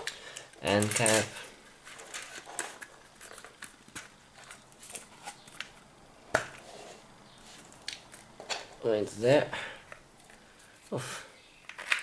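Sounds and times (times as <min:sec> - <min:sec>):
plastic parts clicking and tapping: 0:11.6 - 0:12.0.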